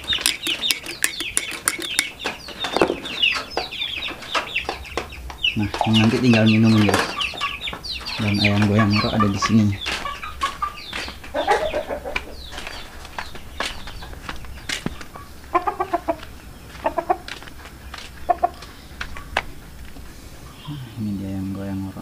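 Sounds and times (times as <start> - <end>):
sharp clicks: 0.0 - 3.7
chicken clucking: 0.0 - 21.8.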